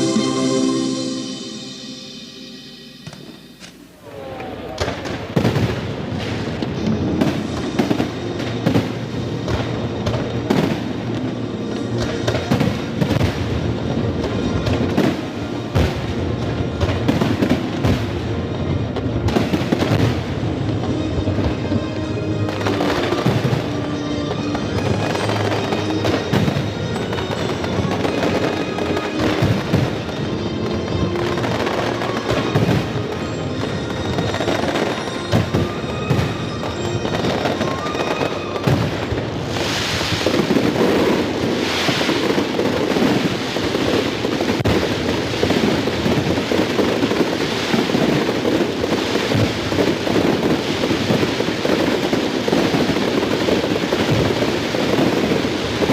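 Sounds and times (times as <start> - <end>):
music with held notes: 0.0 - 3.9, 6.8 - 43.5
fireworks bursting: 0.0 - 4.0, 4.8 - 55.9.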